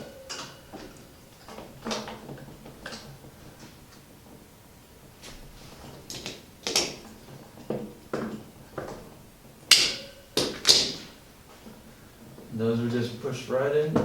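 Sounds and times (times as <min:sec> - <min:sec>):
tubing clicking into fittings: 0:05.9 - 0:12.5.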